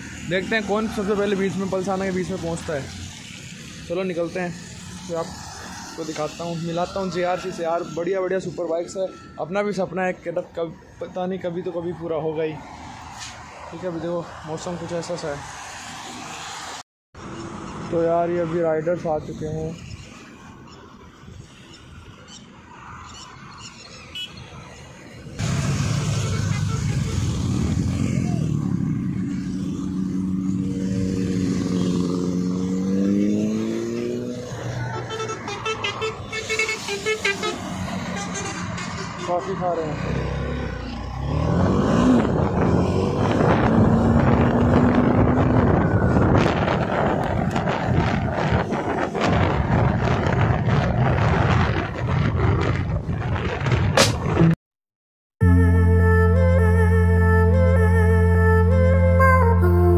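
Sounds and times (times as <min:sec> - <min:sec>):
road rumble: 0:00.0 - 0:54.6
motorcycle engine accelerating: 0:25.4 - 0:34.7, 0:41.2 - 0:53.2, 0:53.9 - 0:54.6
slow stepping melody: 0:55.4 - 0:59.9.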